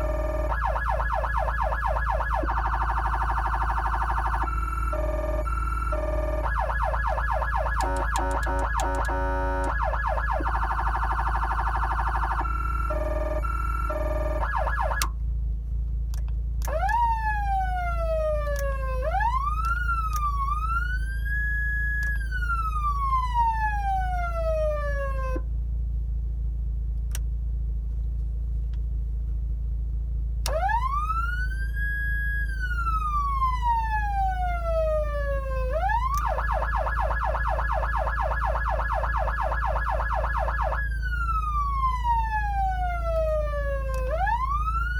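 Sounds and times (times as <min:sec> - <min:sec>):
siren warbling and wailing: 0:00.0 - 0:15.1, 0:16.7 - 0:25.4, 0:30.5 - 0:44.9.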